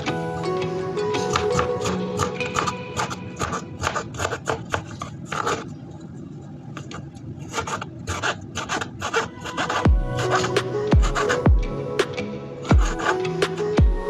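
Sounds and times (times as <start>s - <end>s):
faint background music: 0.0s - 8.4s, 9.0s - 14.0s
food preparation scraping: 2.5s - 5.8s, 6.8s - 11.4s.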